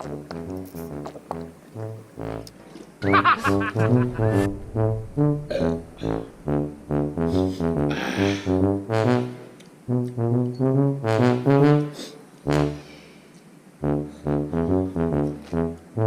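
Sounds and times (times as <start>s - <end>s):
bouncy brass-like tune with bass: 0.0s - 12.9s, 13.8s - 16.0s.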